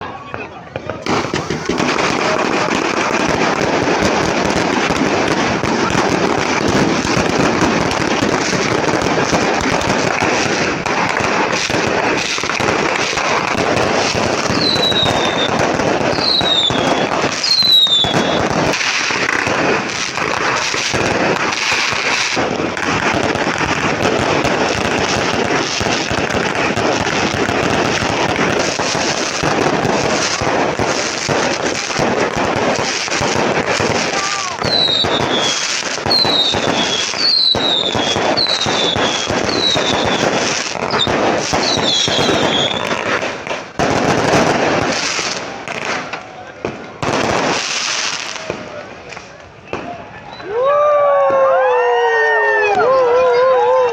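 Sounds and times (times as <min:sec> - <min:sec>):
fireworks crackling and popping: 0:00.0 - 0:53.9
falling firework whistles: 0:11.8 - 0:31.8, 0:32.5 - 0:43.4, 0:49.6 - 0:53.9.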